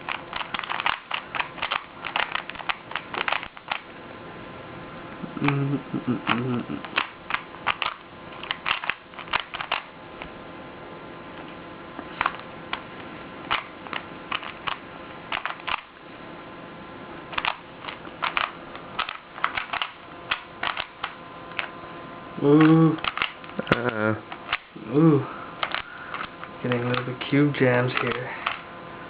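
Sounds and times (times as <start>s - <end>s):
plastic puzzle cube clicking: 0.0s - 3.8s, 6.3s - 9.9s, 13.5s - 15.9s, 17.3s - 21.7s, 22.6s - 24.7s.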